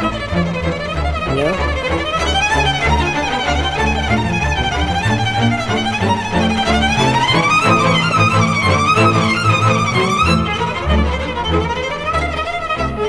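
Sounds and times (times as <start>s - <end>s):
instrumental music with vibrato melody: 0.0s - 13.0s.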